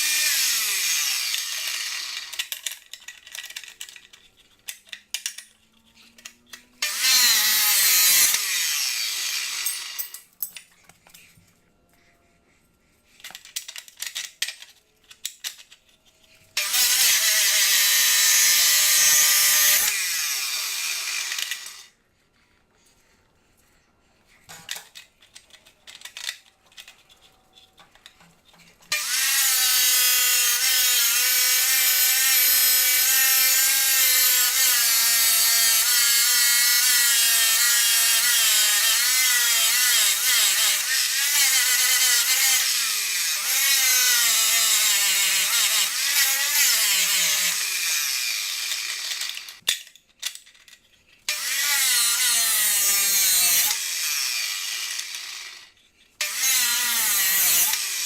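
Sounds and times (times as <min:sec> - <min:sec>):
power tool cutting steel: 0:00.0 - 0:02.9, 0:05.0 - 0:10.4, 0:16.5 - 0:22.0, 0:28.9 - 0:49.6, 0:51.3 - 0:58.0.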